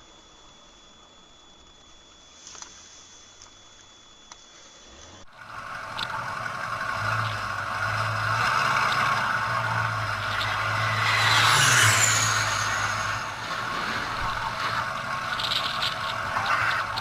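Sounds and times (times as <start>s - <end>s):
high whine falling in pitch: 0.0s - 17.0s
aircraft engine: 5.0s - 17.0s.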